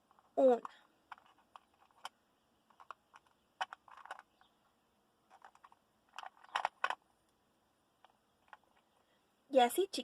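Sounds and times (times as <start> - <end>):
plastic clothespins clicking: 0.0 - 4.4, 5.3 - 7.0.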